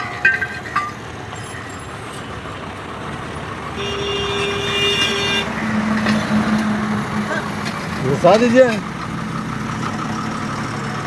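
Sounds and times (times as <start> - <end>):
truck and road traffic: 0.0 - 11.0
horn-like tone: 3.8 - 5.6.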